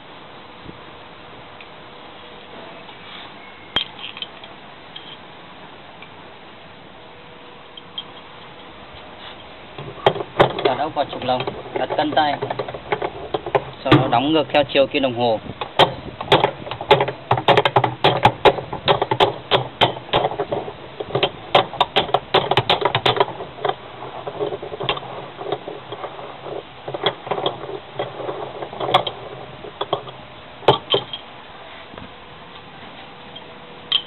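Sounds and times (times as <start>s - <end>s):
hammer knocking on metal bar: 15.7s - 23.3s.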